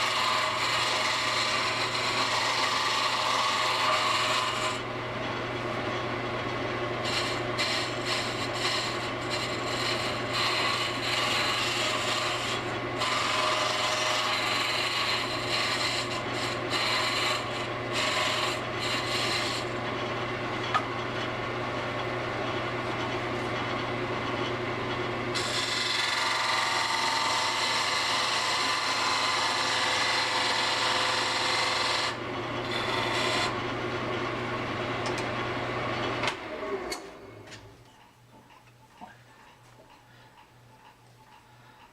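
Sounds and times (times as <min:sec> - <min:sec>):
gouge scraping spinning wood: 0:00.0 - 0:21.3, 0:22.1 - 0:33.8
lathe motor hum: 0:00.0 - 0:37.4.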